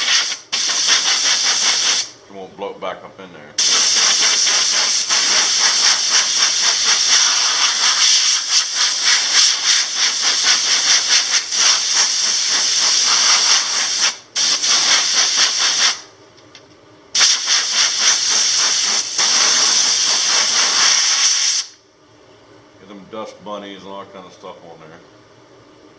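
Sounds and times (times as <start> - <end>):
compressed air hissing from blow gun: 0.0 - 2.2, 3.6 - 16.0, 17.2 - 21.8.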